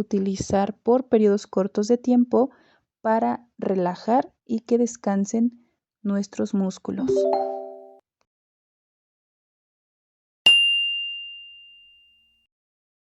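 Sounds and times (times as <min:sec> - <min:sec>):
bell-like ding: 0:07.0 - 0:08.0, 0:10.5 - 0:12.5.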